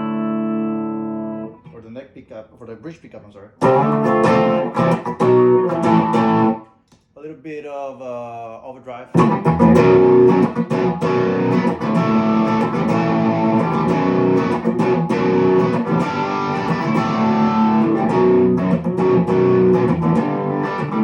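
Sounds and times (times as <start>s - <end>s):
overdriven electric guitar: 0.0s - 1.8s, 3.6s - 6.6s, 9.2s - 21.0s.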